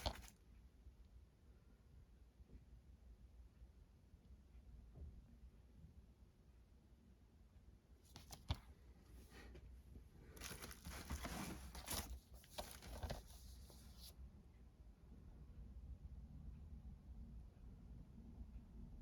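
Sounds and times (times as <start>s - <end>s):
packaging rustling and tearing: 10.4s - 13.8s.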